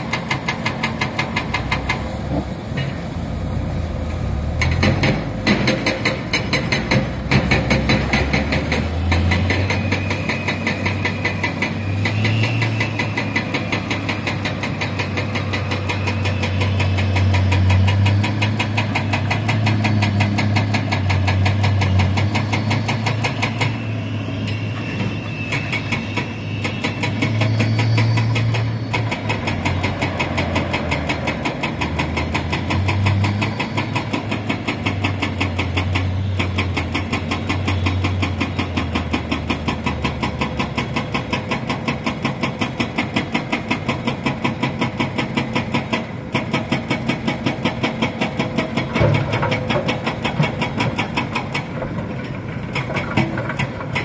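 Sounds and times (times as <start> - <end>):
heavy diesel engine drone: 0.0 - 42.5.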